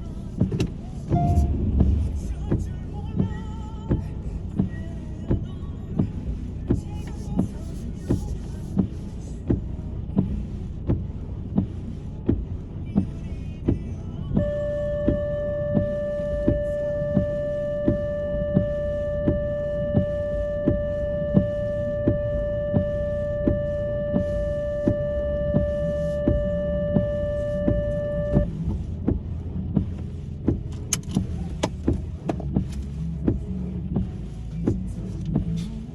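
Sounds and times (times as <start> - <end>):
regular ticking: 0.0 - 35.7
irregular tapping of rain: 0.0 - 35.9
low rumble: 0.0 - 35.9
electronic warning tone: 14.4 - 28.5.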